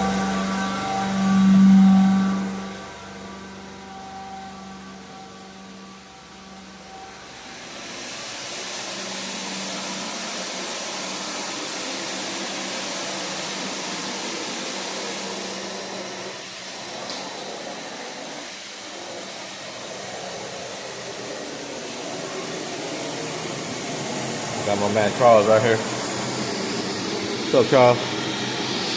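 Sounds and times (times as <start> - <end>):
low hum: 0.0 - 7.9
electric motor machine whirring: 0.0 - 28.9.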